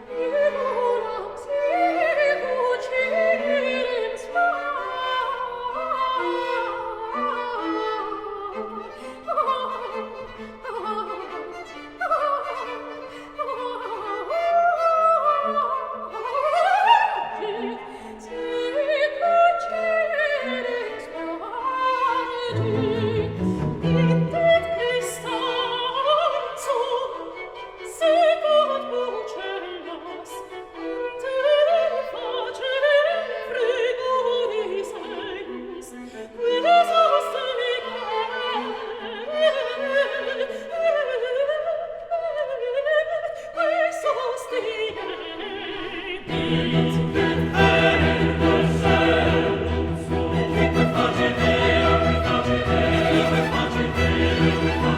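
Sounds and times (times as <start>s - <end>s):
orchestra with bowed strings: 0.0s - 40.6s, 44.6s - 54.9s
operatic voice singing: 17.2s - 26.8s, 43.9s - 54.9s.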